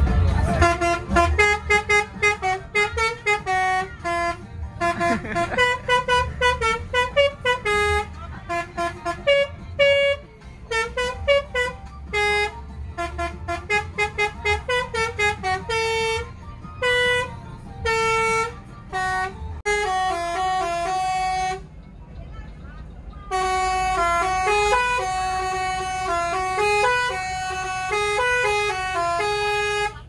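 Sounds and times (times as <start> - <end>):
low rumble of bus engine: 0.0 - 30.0
bus melody horn playing a tune: 0.4 - 21.8, 23.2 - 30.0.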